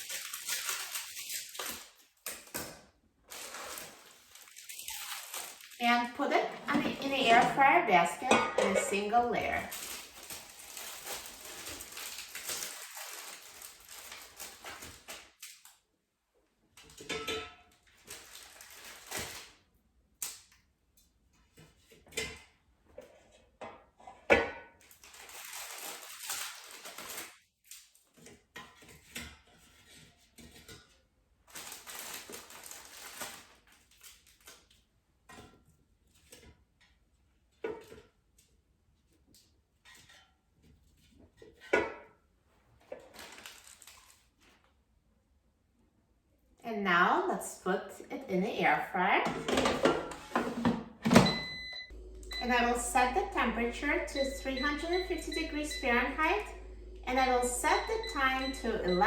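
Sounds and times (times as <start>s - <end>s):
packaging rustling: 0.0s - 2.6s, 3.2s - 6.9s, 9.6s - 15.8s, 17.9s - 19.6s, 24.8s - 28.1s, 31.5s - 34.7s, 43.0s - 44.7s.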